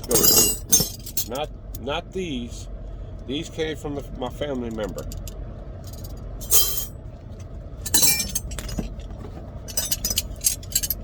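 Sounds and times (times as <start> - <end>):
steel wrenches clinking: 0.0 - 1.4, 5.9 - 6.9, 7.8 - 9.1, 9.7 - 11.0.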